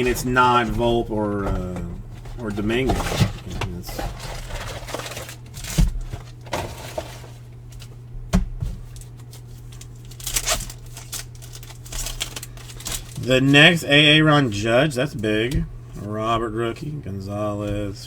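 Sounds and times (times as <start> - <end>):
steady low hum: 0.0 - 18.0
foil wrapper crinkling and tearing: 2.3 - 8.0, 8.8 - 13.9.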